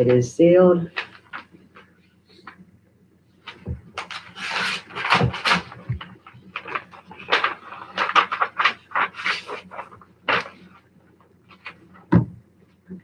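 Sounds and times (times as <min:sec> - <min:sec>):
paper rustling: 0:00.9 - 0:02.6, 0:03.4 - 0:10.8, 0:11.5 - 0:12.2
envelope tearing: 0:03.5 - 0:10.6.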